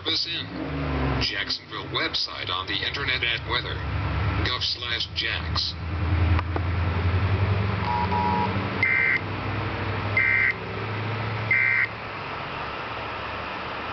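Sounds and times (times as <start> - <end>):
brief beeps: 7.9 - 9.2
high-pitched data tone bursts: 7.9 - 9.2, 11.5 - 11.9.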